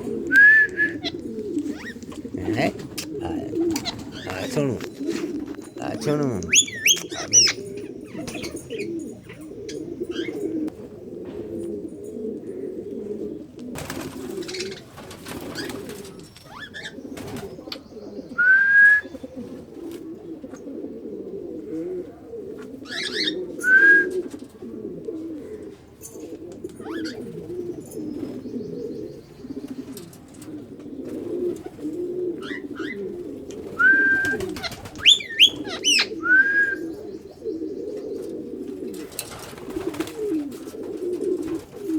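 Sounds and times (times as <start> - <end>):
pigeons cooing: 0.0 - 41.9
sharp rising bird calls: 33.8 - 38.0.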